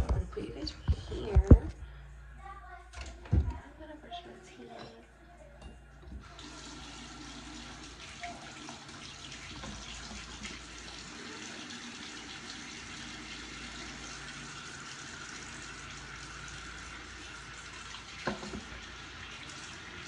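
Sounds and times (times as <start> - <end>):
water running into basin: 6.1 - 20.0.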